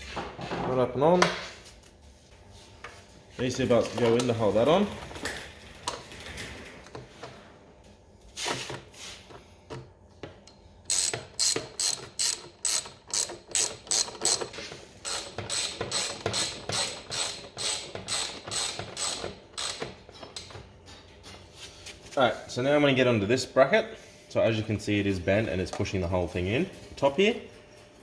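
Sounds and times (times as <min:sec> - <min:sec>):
ratchet wrench clicking: 0:10.9 - 0:20.0.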